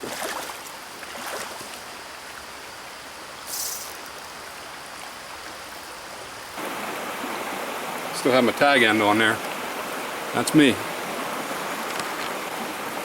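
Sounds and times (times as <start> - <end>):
stream water running: 0.0 - 13.0
water splashes: 0.0 - 13.0
short sharp hiss: 3.4 - 4.4.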